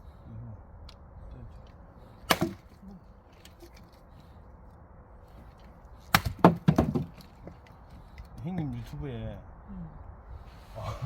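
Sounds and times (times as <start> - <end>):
axe striking log: 2.2 - 2.7, 6.1 - 7.3.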